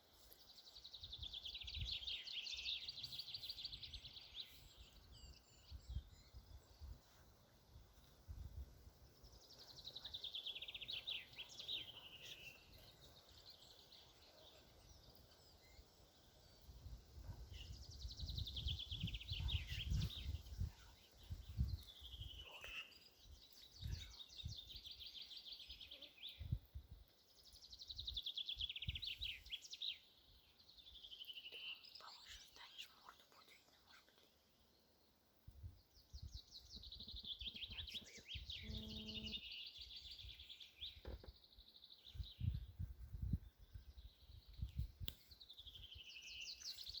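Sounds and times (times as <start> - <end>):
songbird trilling: 36.8 - 40.0.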